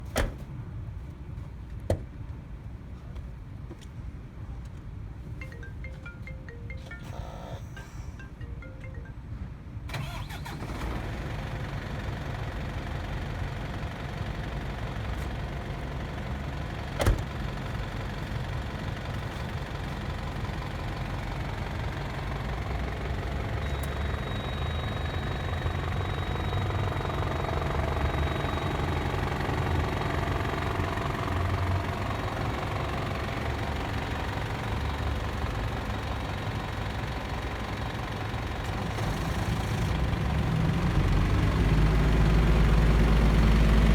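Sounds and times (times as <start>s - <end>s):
diesel truck engine idling: 9.9s - 43.9s.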